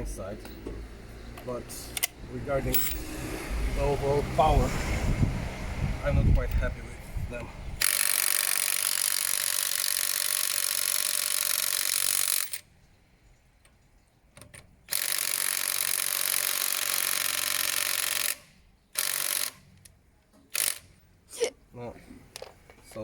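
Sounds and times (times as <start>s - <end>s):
impact wrench hammering: 2.7s - 3.2s.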